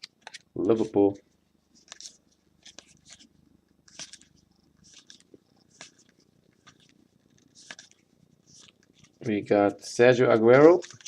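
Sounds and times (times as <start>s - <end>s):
trading cards swishing: 1.7s - 9.4s, 10.4s - 11.0s.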